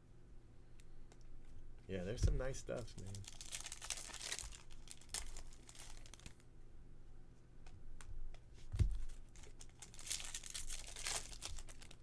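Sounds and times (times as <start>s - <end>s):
dull thump: 2.2s - 2.5s
cards clicking and tapping: 2.2s - 3.2s
card rustle: 2.2s - 6.4s, 9.0s - 12.0s.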